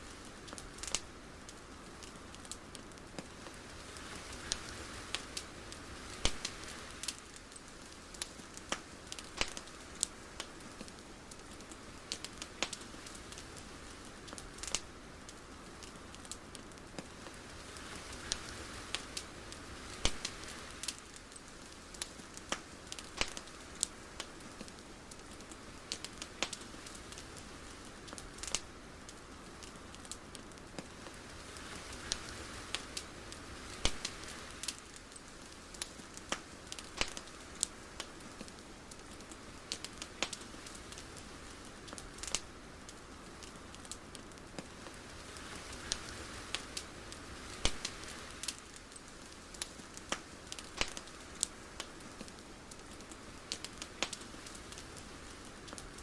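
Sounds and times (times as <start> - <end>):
sharp crackling pops and clicks: 0.0 - 56.0
soft hiss: 0.0 - 56.0.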